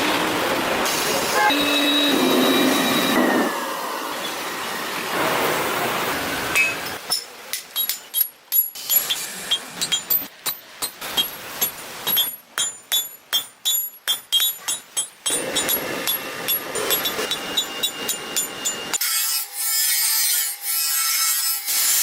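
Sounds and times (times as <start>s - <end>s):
metallic blacksmith hammer strikes: 6.6s - 19.1s.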